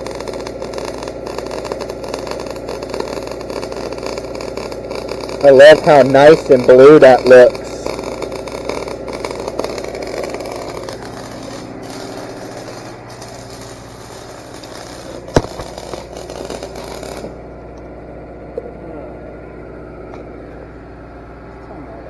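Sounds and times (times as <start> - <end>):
welding arc crackling: 0.0 - 21.5
welder engine running: 0.0 - 22.0
sharp pop: 14.5 - 17.4.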